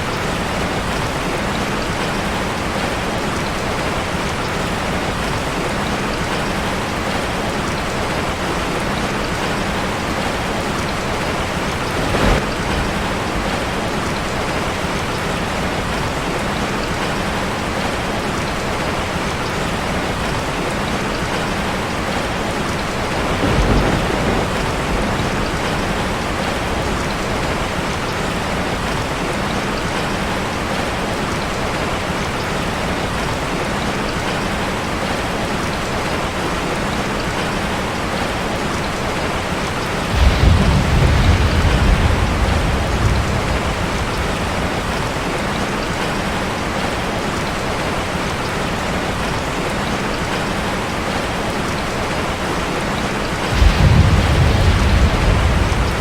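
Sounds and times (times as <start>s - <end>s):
steady rain on a street: 0.0s - 56.0s
thunder rumbling: 8.7s - 17.4s, 22.0s - 28.2s, 40.0s - 46.7s, 53.3s - 56.0s.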